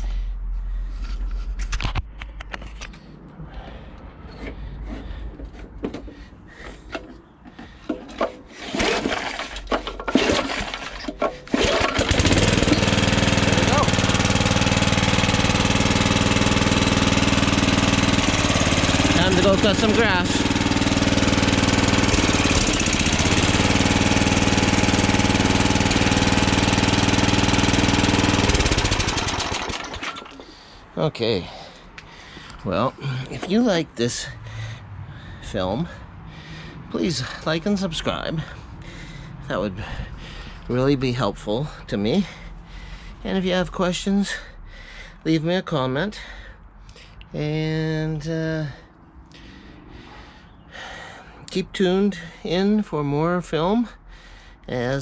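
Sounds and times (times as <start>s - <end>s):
clicks and scrapes: 1.0s - 3.1s
lawnmower engine starting: 4.2s - 30.8s
starter cord pulls: 4.3s - 30.5s.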